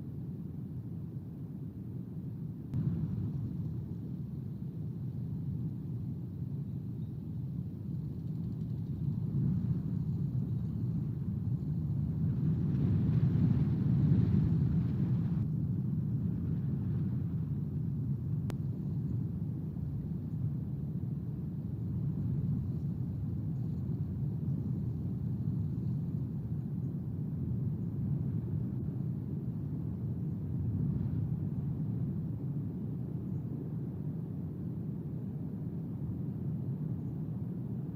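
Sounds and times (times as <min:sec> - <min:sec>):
wind buffeting microphone: 0:09.0 - 0:20.2.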